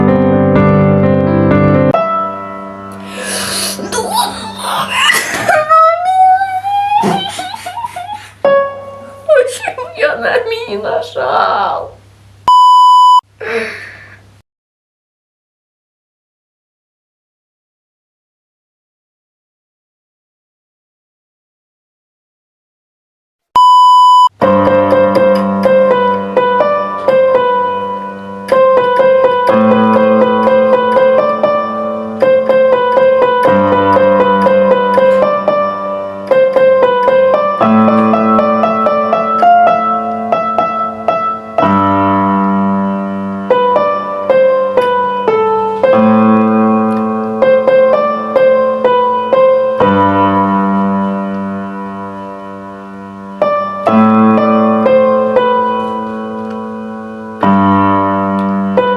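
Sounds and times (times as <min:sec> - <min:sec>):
piano melody over chords: 0:00.0 - 0:04.8, 0:08.4 - 0:09.5, 0:23.6 - 0:58.9
short electronic beep: 0:12.5 - 0:13.2, 0:23.6 - 0:24.4.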